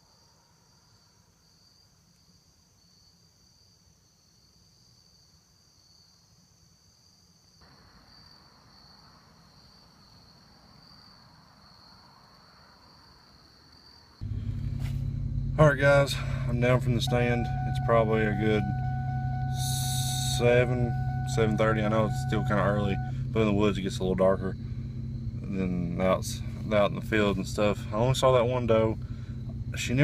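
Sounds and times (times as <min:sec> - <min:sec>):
crickets trilling: 0:00.0 - 0:15.5, 0:17.2 - 0:30.0.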